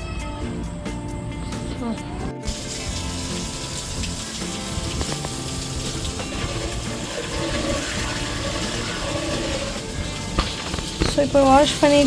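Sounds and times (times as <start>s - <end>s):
background music: 0.0s - 12.0s
water pouring and splashing: 2.4s - 12.0s.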